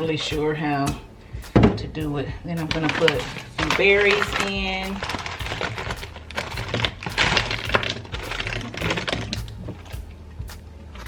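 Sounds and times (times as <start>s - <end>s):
berries clattering into ice: 2.7s - 9.9s.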